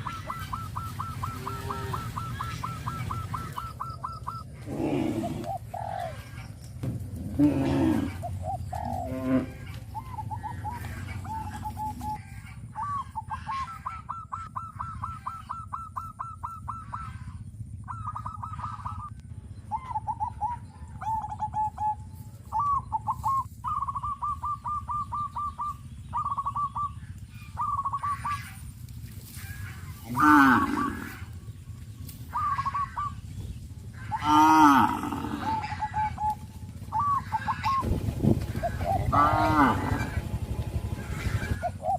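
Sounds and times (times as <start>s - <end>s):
fowl rattling calls: 0.0s - 19.1s, 22.5s - 41.9s
steady low rumble: 0.0s - 41.9s
cattle mooing: 1.2s - 2.6s, 4.6s - 5.5s, 7.2s - 9.9s, 30.0s - 31.4s, 34.1s - 35.8s, 39.0s - 41.6s.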